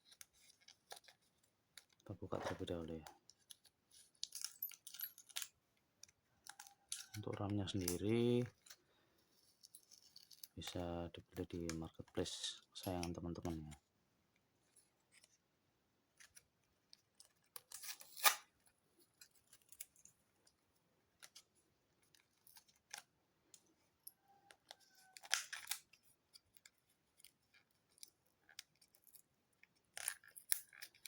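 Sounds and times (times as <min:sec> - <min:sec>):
packaging crinkling or snipping: 0:17.0 - 0:18.5, 0:24.9 - 0:26.7.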